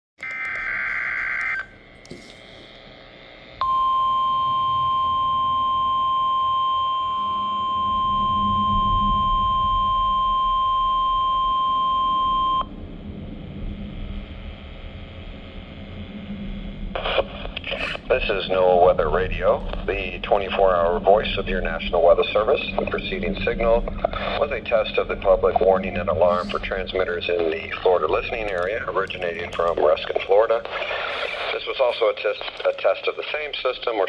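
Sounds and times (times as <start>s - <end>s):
steady warning alarm tone: 0.2s - 2.8s, 3.6s - 33.4s
radio hiss: 0.2s - 3.6s, 14.1s - 34.0s.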